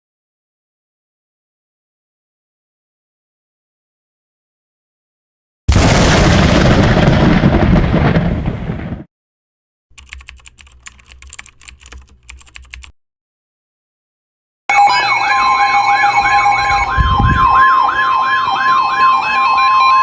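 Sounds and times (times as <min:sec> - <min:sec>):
attention tones: 0:14.7 - 0:20.0
fast warbling siren: 0:14.7 - 0:20.0.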